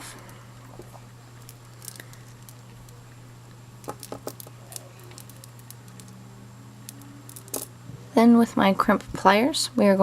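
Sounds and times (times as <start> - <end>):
steady low hum: 0.0 - 10.0
beads and metal tools clicking: 3.8 - 6.2, 6.9 - 7.7.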